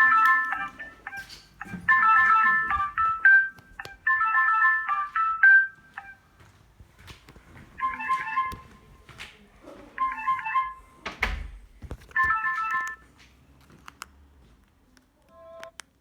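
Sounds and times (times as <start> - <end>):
phone ringtone melodies: 0.0 - 6.4, 7.8 - 8.9, 10.0 - 11.0, 12.1 - 13.1.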